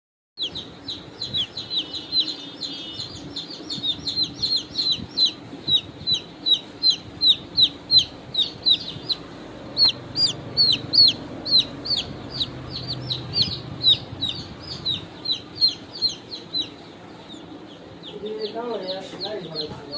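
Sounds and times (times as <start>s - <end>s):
chicks peeping: 0.4s - 19.9s.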